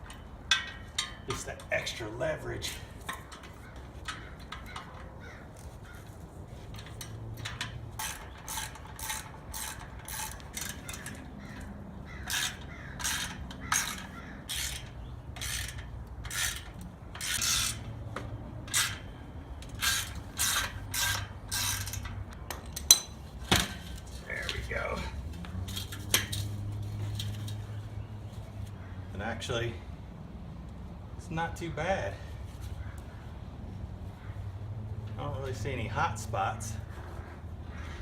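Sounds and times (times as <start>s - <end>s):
socket ratchet clicking: 6.8s - 17.9s, 18.6s - 23.1s.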